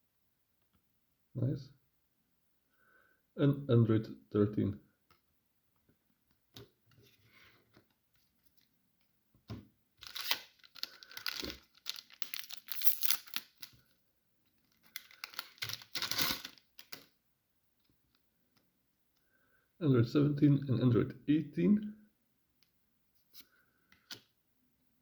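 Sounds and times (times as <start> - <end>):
foil wrapper crinkling and tearing: 10.0 - 13.8, 14.6 - 17.1.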